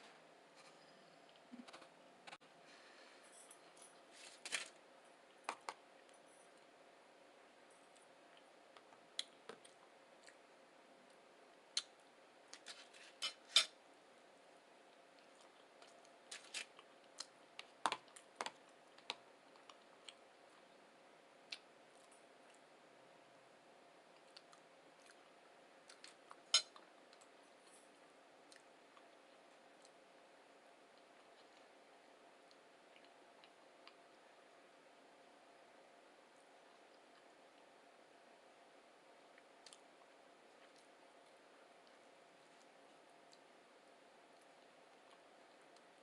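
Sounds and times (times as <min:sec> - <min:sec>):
faint steady hum: 0:00.0 - 0:46.0
person eating with sharp clicks: 0:15.2 - 0:20.2.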